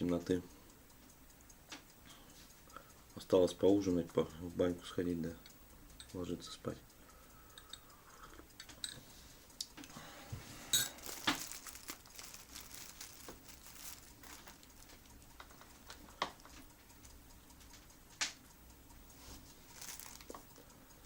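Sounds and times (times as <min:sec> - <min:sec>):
small clicks taps and crinkling: 0:00.0 - 0:06.9, 0:07.5 - 0:10.0, 0:10.9 - 0:21.0
low room hiss: 0:00.0 - 0:21.0.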